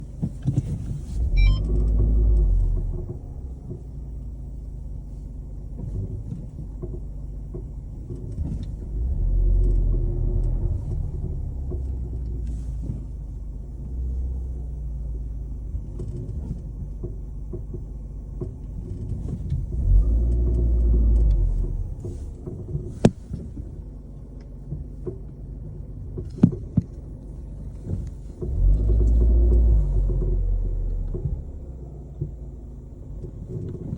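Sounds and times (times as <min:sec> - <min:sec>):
car rumbling while driving: 0:00.0 - 0:33.9.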